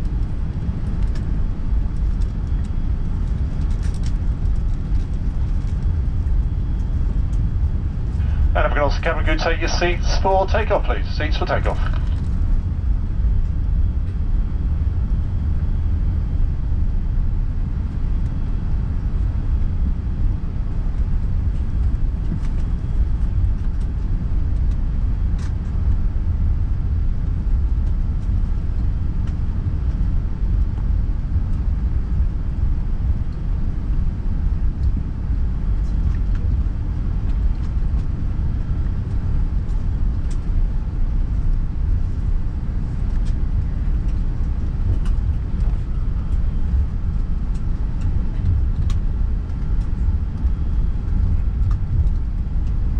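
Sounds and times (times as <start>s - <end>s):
airplane cabin engine rumble: 0.0s - 52.9s
faint rattles and clicks: 2.0s - 5.8s.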